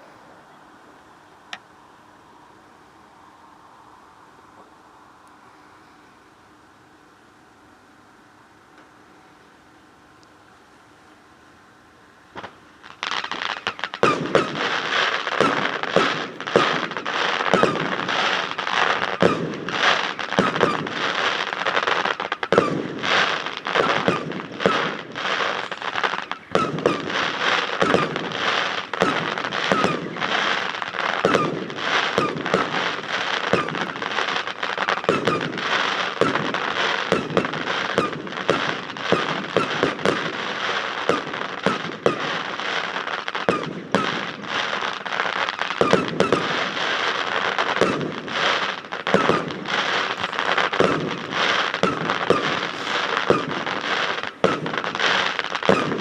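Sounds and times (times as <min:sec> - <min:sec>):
fireworks bangs and crackles: 0:12.3 - 0:56.0.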